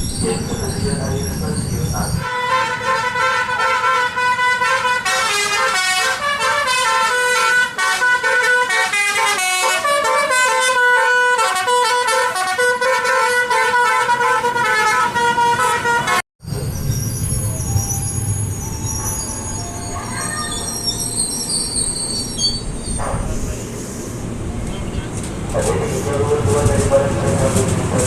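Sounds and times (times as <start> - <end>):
musical bus horn melody: 2.2 - 16.2.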